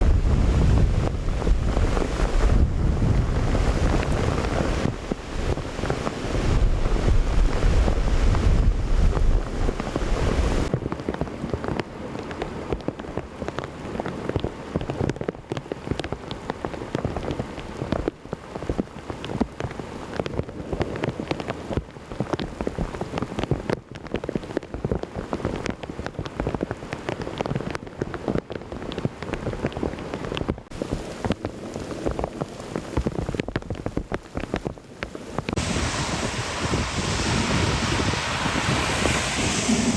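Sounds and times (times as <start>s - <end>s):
heavy rain: 0.0s - 10.7s, 29.8s - 39.9s
thunder rumble: 0.0s - 10.7s, 35.5s - 39.9s.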